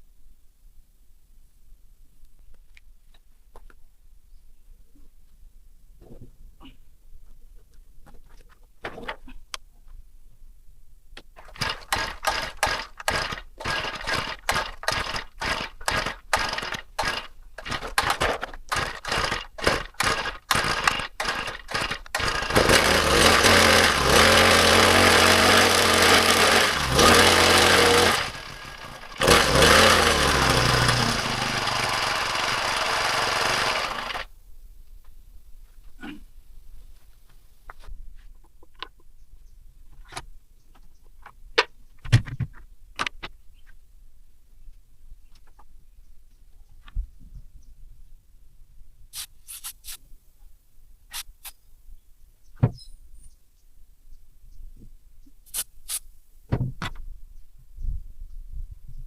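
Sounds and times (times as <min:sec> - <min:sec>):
brush-cutter engine running: 0:11.4 - 0:34.3.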